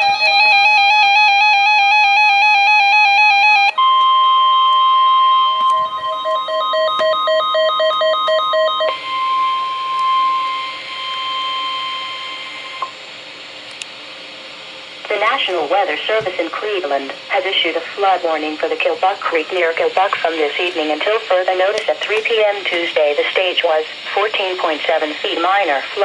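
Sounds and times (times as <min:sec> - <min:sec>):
steady warning alarm tone: 0:00.0 - 0:26.0
alternating electronic beeps: 0:00.1 - 0:12.9
radio hiss: 0:14.7 - 0:26.0.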